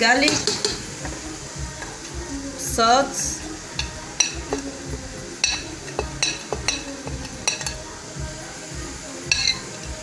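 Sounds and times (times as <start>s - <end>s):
metal spoon clinking on pot: 5.4s - 7.8s, 9.3s - 9.7s.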